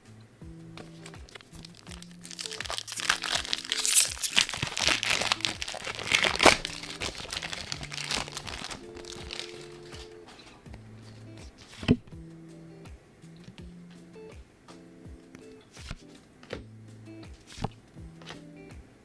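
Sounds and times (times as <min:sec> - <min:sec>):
soft background music: 0:00.0 - 0:19.0
foil wrapper crinkling: 0:00.9 - 0:10.2.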